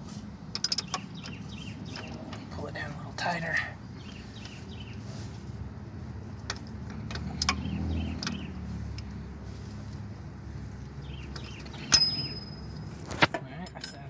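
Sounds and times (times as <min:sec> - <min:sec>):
passing vehicle rumble: 0:00.0 - 0:13.3
sharp metal clicks: 0:00.5 - 0:02.2, 0:06.4 - 0:08.5.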